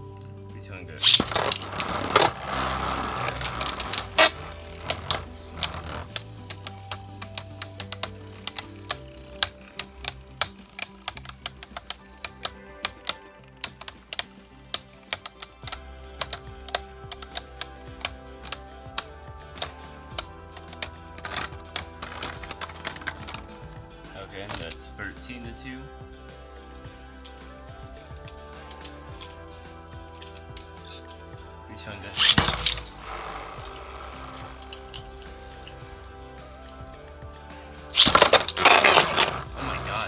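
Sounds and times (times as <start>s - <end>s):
spinning tops whirring: 1.0s - 25.6s, 26.2s - 40.0s
spinning tops clashing: 32.1s - 36.7s, 37.7s - 40.0s.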